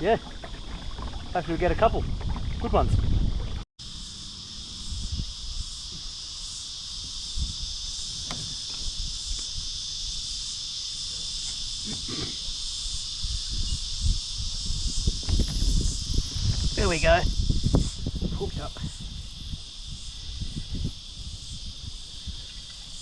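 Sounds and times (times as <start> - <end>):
low bumps and rumbles: 0.0 - 3.6
cicadas buzzing: 0.0 - 23.0.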